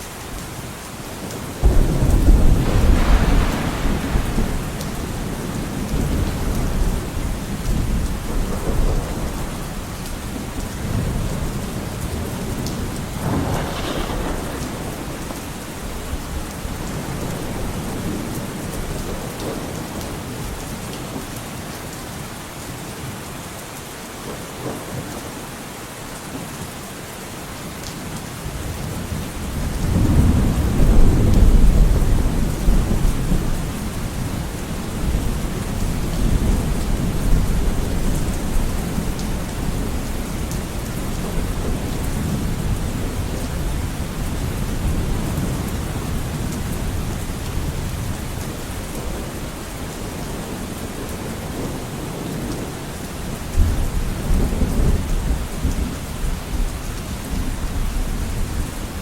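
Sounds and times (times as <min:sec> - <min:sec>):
steady rain falling: 0:00.0 - 0:59.0
thunder rolling: 0:01.6 - 0:09.6, 0:10.8 - 0:19.6.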